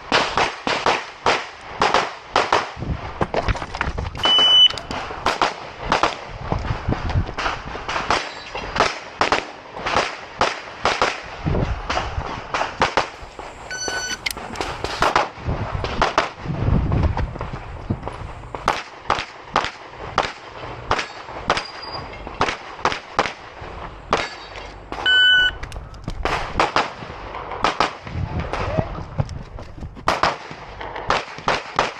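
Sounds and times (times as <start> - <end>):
electronic beep: 4.2 - 4.9, 13.6 - 14.4, 25.0 - 25.6
pistol shots: 24.1 - 25.0, 30.1 - 31.9.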